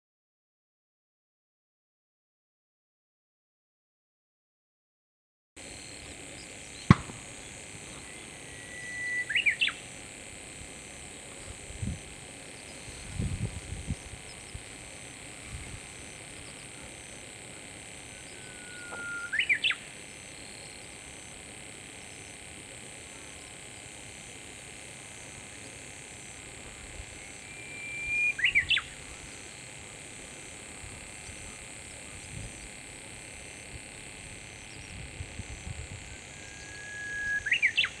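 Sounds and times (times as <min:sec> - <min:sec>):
bird singing whistled song: 0:08.0 - 0:09.8, 0:18.2 - 0:19.8, 0:27.2 - 0:29.0, 0:36.3 - 0:38.0.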